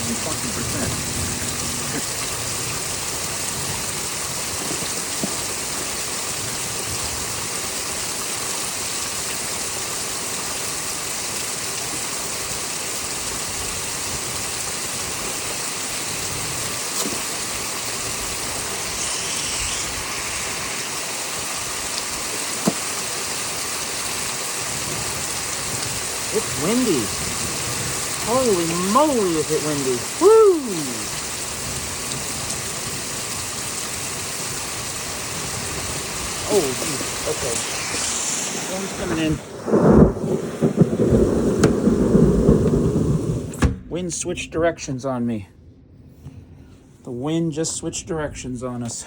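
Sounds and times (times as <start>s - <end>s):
gusting wind: 0.0s - 7.8s, 13.1s - 22.6s, 23.2s - 44.7s
heavy rain: 0.0s - 43.7s.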